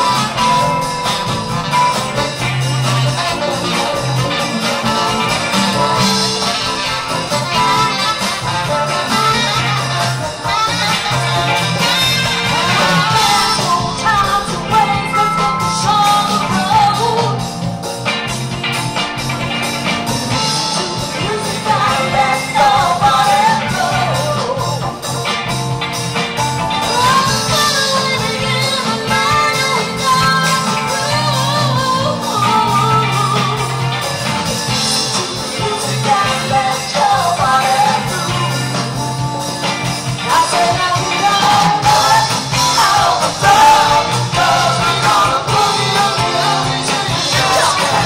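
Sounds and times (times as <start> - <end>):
bass line: 0.0 - 48.0
rock song with singing: 0.0 - 48.0
person singing: 12.3 - 17.7, 20.3 - 25.0, 40.2 - 48.0.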